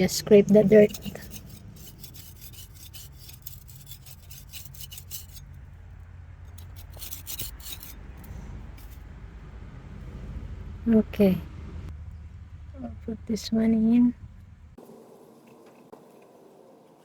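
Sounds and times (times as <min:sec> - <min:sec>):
scraping dirt off metal plate: 0:00.0 - 0:05.7, 0:06.5 - 0:09.1
low hum: 0:00.0 - 0:14.8.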